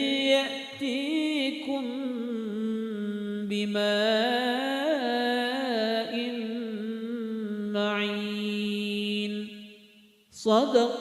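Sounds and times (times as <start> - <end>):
person chanting recitation: 0.0 - 9.7, 10.3 - 11.0.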